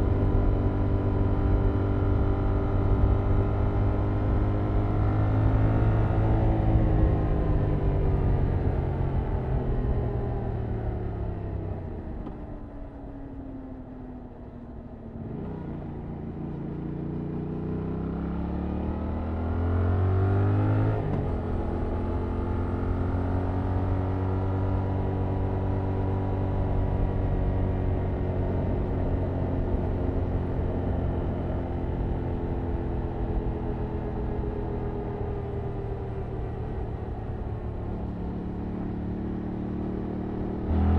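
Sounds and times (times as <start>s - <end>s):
motorcycle engine revving: 35.3s - 40.9s.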